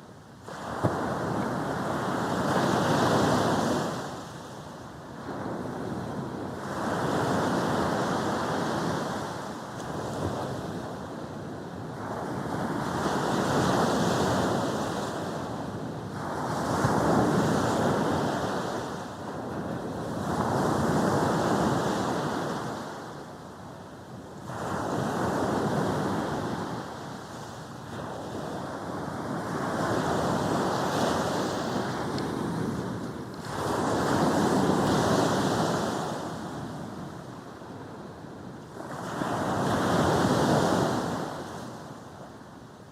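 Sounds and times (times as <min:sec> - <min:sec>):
sea waves breaking on beach: 0:00.4 - 0:11.0, 0:24.4 - 0:42.2.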